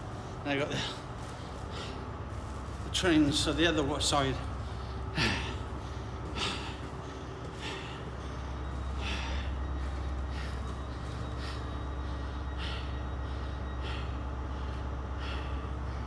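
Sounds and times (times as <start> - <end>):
steady low rumble: 0.0 - 16.0
man breathing hard: 0.7 - 2.8, 4.5 - 16.0.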